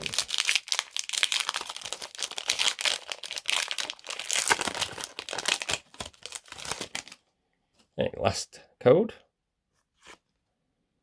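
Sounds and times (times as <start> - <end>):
foil wrapper crinkling and tearing: 0.0 - 7.2.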